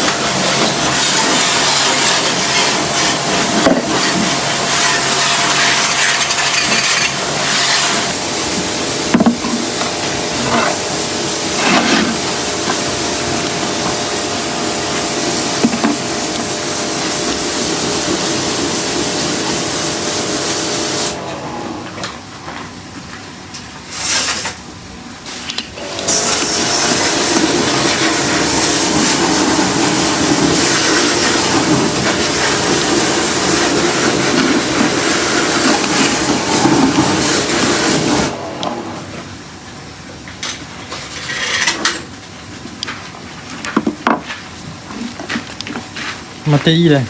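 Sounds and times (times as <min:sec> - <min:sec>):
short spray blasts: 0:00.0 - 0:21.2, 0:25.3 - 0:38.4
pressure washer spraying water: 0:00.0 - 0:21.8, 0:25.3 - 0:39.1
pump motor running: 0:00.0 - 0:22.2, 0:25.8 - 0:39.2.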